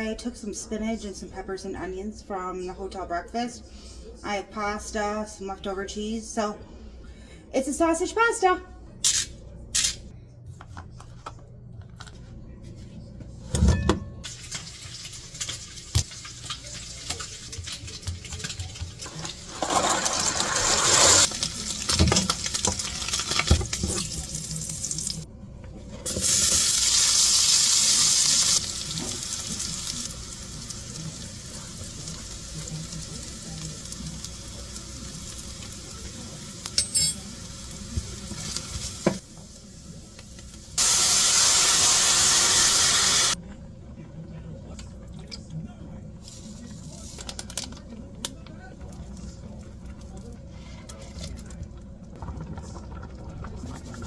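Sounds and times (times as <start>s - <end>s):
pots and pans clinking: 13.5s - 20.8s, 36.6s - 37.5s
water running: 14.2s - 25.3s
sausage sizzling in a pan: 26.1s - 43.4s.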